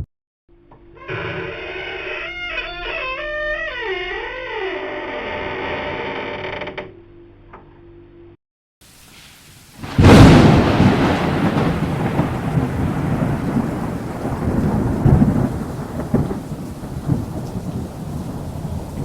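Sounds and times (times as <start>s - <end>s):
rain hiss: 8.8s - 19.0s
thunder crack and rumble: 9.8s - 19.0s.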